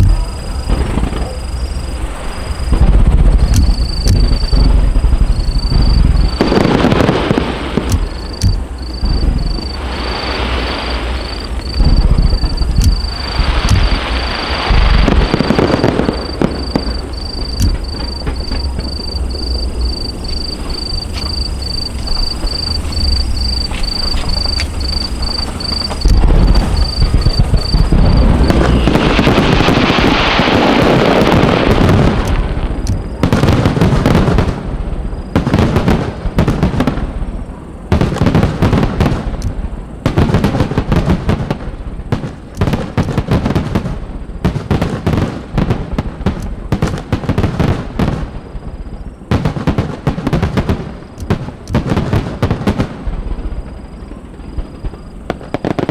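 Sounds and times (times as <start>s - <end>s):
low rumble: 0.0s - 29.5s
sharp firework bangs: 0.0s - 37.3s
crackling firework bursts: 0.0s - 55.9s.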